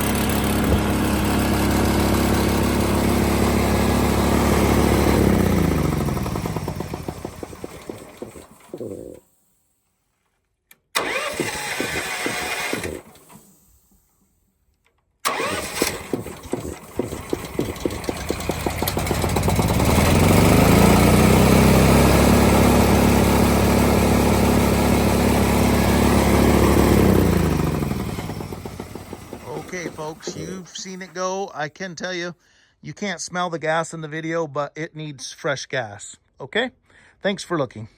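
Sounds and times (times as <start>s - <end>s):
air compressor engine running: 0.0s - 9.2s, 11.0s - 13.4s, 15.3s - 31.1s.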